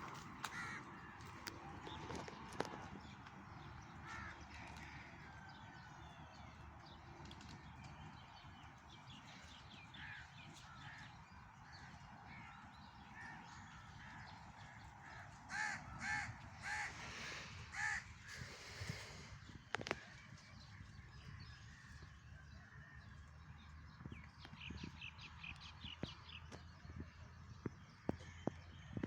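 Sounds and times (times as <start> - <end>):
harsh bird calls: 12.3 - 21.4.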